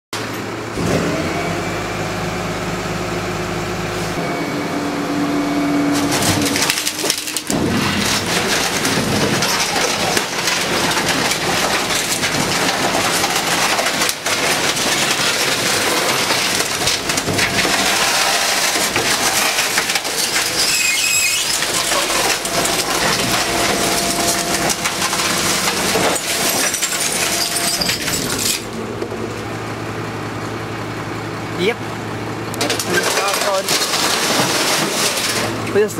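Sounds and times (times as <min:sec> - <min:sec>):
truck engine and hydraulics: 0:00.2 - 0:35.9
high metal squeal: 0:04.2 - 0:10.8, 0:17.5 - 0:28.8
casing cracking and crunching: 0:06.0 - 0:29.4, 0:32.6 - 0:35.6.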